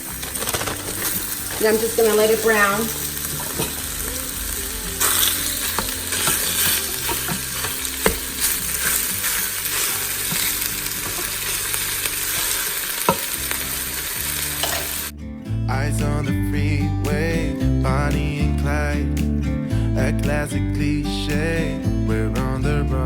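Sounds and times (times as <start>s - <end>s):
meat sizzling in hot oil: 0.0s - 15.1s.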